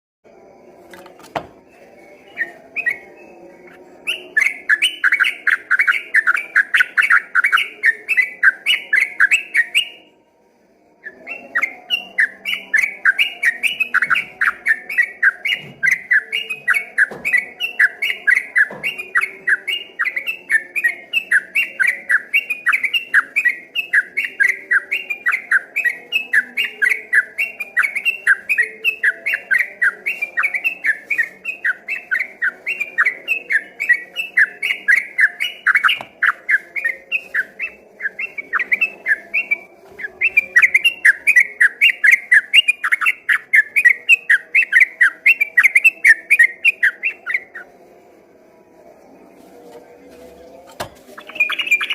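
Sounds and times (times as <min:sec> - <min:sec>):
bulbul singing: 0:00.5 - 0:48.1, 0:49.4 - 0:51.9.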